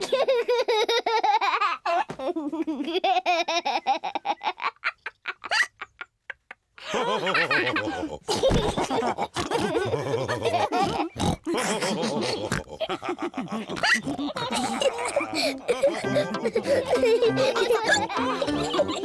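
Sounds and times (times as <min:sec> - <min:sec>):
cartoon pigs snorting and oinking: 0:07.5 - 0:19.0.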